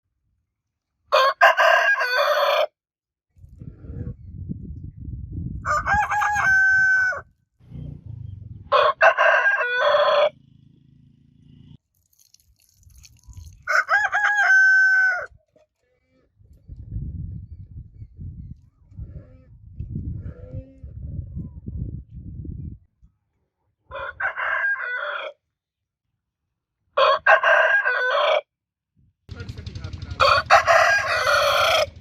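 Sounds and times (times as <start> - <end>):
roosters crowing: 1.1 - 2.7, 5.6 - 7.3, 8.6 - 10.5, 13.7 - 15.4, 23.9 - 25.4, 27.0 - 28.4, 30.2 - 32.0
low rumble: 7.6 - 8.8, 29.3 - 32.0.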